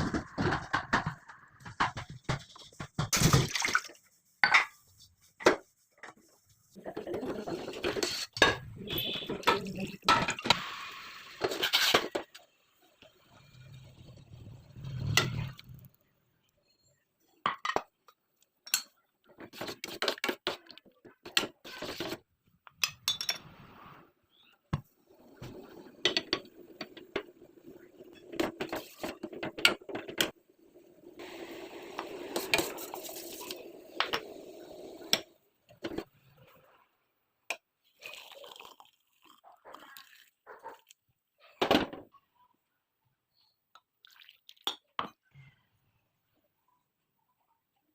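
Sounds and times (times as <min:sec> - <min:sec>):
dishes and utensils clinking: 0:22.8 - 0:23.5.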